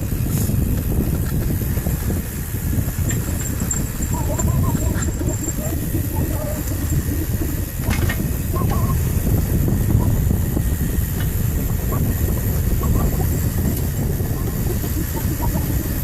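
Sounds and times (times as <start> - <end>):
vehicle engine rumble: 0.0 - 16.0
wind noise: 0.0 - 16.0
light rattles: 0.3 - 16.0.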